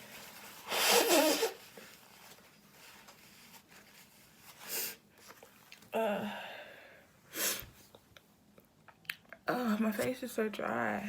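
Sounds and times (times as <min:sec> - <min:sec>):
person sniffing: 0:00.6 - 0:01.6, 0:04.6 - 0:05.0, 0:07.3 - 0:07.9
person's nasal burst of breath: 0:00.6 - 0:01.6, 0:07.3 - 0:07.8.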